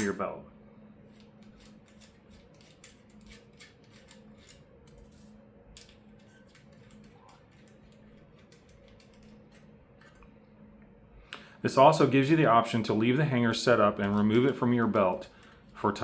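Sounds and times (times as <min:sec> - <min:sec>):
low steady hum: 0:00.0 - 0:16.0
small metal clicks and ticks: 0:01.1 - 0:10.3.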